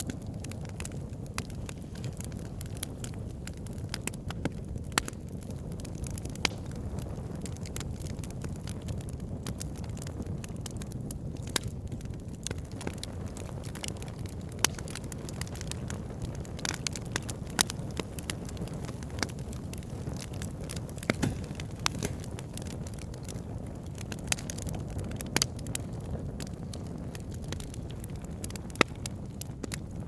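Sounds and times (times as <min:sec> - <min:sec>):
campfire crackling and popping: 0:00.0 - 0:30.0.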